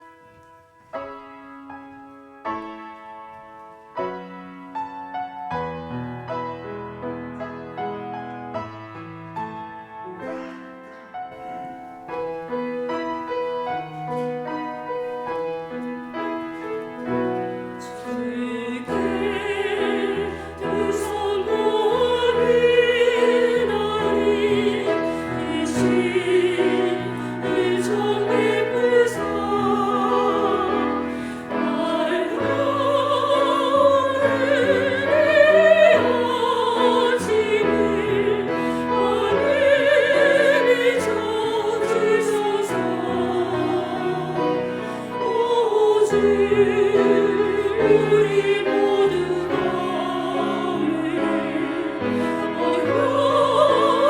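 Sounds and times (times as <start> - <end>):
solo piano: 0.0 - 54.0
women's vocal ensemble singing: 11.4 - 54.0.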